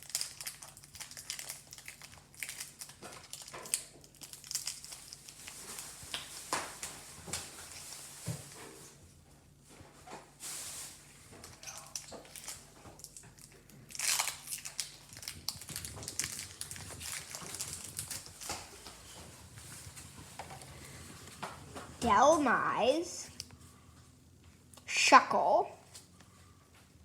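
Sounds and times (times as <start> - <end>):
foil wrapper crinkling: 0.0 - 8.3, 10.4 - 21.4.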